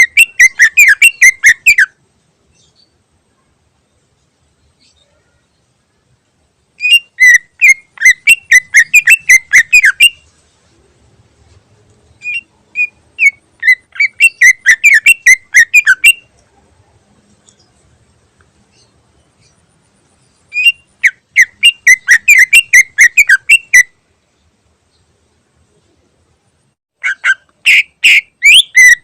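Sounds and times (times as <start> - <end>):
bird whistling rapidly: 0.0 - 2.0, 6.8 - 10.2, 12.2 - 16.3, 20.5 - 23.9, 27.0 - 29.0.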